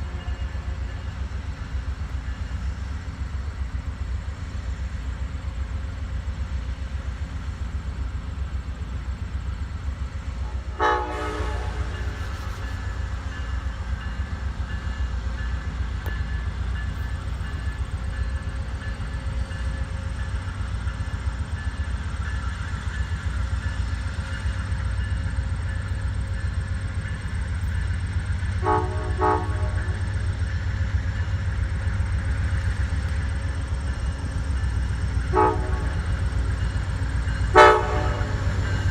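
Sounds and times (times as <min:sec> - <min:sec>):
train horn toots: 0:00.0 - 0:01.2, 0:10.4 - 0:13.3, 0:28.6 - 0:30.1, 0:35.2 - 0:36.3, 0:37.5 - 0:38.9
train locomotive rumbling: 0:00.0 - 0:38.9.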